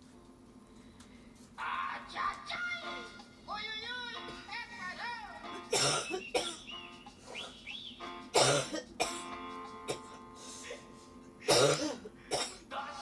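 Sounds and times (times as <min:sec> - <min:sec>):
background music: 0:01.6 - 0:13.0
woman coughing: 0:05.7 - 0:06.7, 0:08.4 - 0:09.3, 0:09.9 - 0:10.8, 0:11.4 - 0:12.6.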